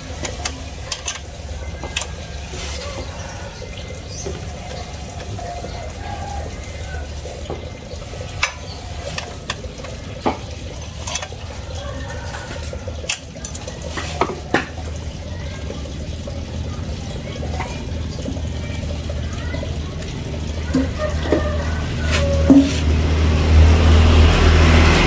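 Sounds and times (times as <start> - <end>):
metal tools clinking on engine: 0.0 - 3.1, 8.0 - 14.6.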